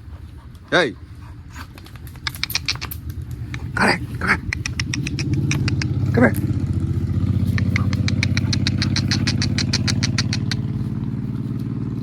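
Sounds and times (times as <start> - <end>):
engine idling: 0.0 - 12.0
fast sharp clicks: 1.7 - 6.6, 7.4 - 10.7.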